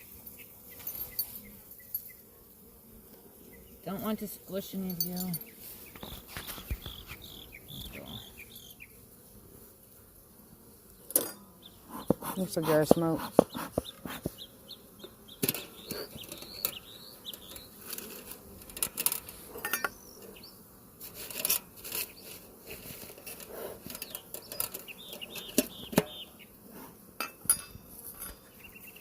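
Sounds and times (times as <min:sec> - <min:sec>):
faint high chirping: 0:05.0 - 0:09.0, 0:13.5 - 0:17.8
hive tool clicks and knocks: 0:12.0 - 0:14.4.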